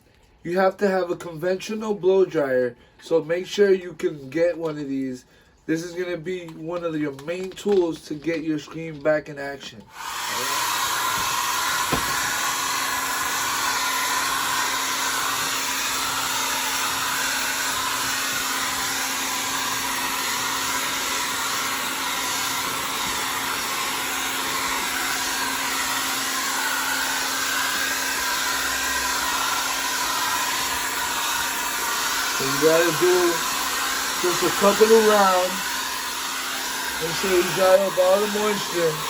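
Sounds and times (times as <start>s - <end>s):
hair dryer running: 9.9s - 39.0s.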